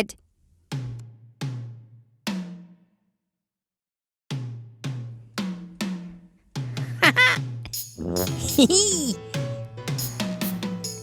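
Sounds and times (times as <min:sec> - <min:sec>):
musical hits with drums: 0:00.7 - 0:02.8, 0:04.3 - 0:11.0.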